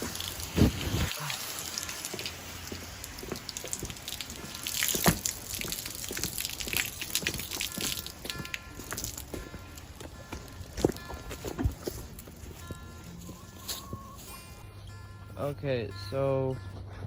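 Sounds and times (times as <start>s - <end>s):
garden hose spluttering water: 0.0s - 12.7s.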